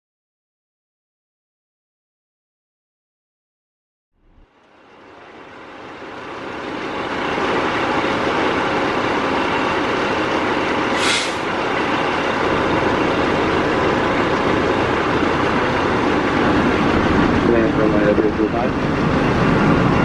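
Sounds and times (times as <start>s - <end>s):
diesel engine running: 4.2s - 20.0s
air brake hiss: 10.9s - 11.5s.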